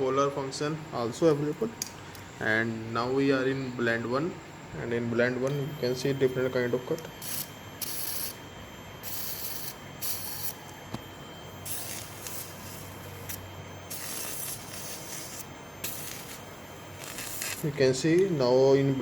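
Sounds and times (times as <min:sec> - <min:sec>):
cautery pencil sizzling: 0:07.2 - 0:08.4, 0:09.0 - 0:10.7, 0:11.6 - 0:18.2.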